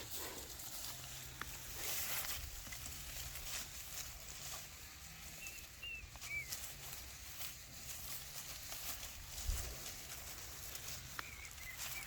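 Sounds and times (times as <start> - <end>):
soft rustling: 0.0 - 12.0.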